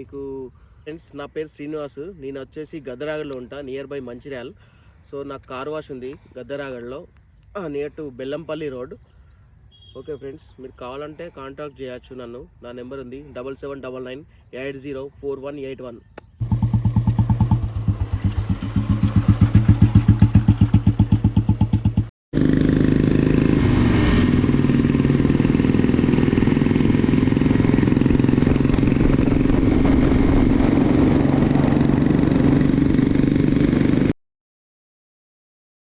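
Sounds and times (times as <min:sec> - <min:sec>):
motorcycle engine at higher revs: 0:16.2 - 0:34.2
motorcycle engine idling: 0:16.4 - 0:23.1.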